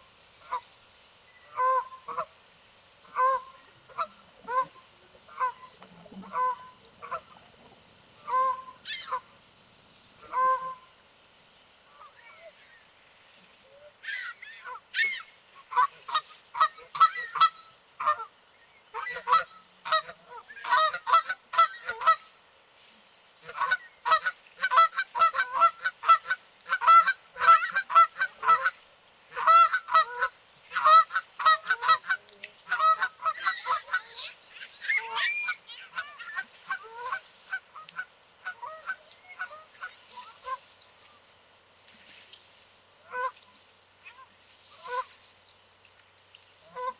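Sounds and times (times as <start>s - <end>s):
geese honking: 1.5s - 2.3s, 3.0s - 9.4s, 10.2s - 10.9s, 14.0s - 22.3s, 23.4s - 40.7s, 43.0s - 43.4s, 44.0s - 45.2s, 46.6s - 46.9s.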